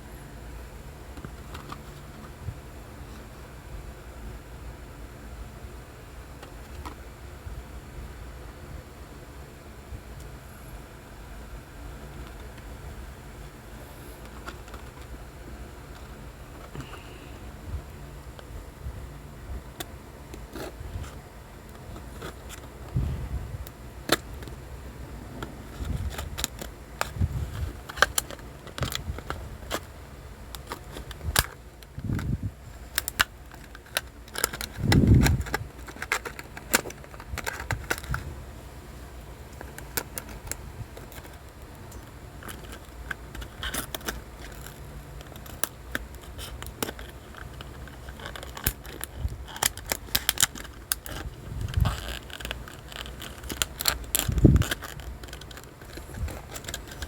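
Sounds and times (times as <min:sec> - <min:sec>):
packaging clicks and crinkles: 0:01.1 - 0:02.4, 0:14.2 - 0:17.2, 0:25.6 - 0:38.2, 0:39.3 - 0:57.0.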